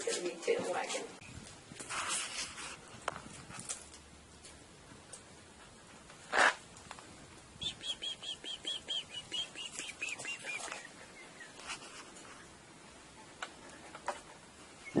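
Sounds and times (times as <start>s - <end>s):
songbird singing: 7.5s - 11.6s.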